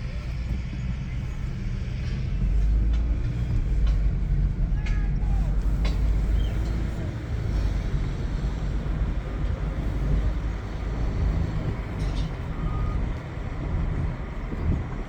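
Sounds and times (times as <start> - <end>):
car driving rumble: 0.0 - 15.0
faint short beep: 12.5 - 13.0.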